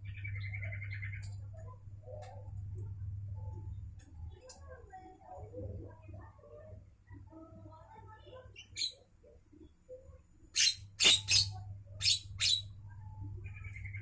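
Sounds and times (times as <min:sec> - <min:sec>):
harsh bird calls: 0:10.6 - 0:12.7.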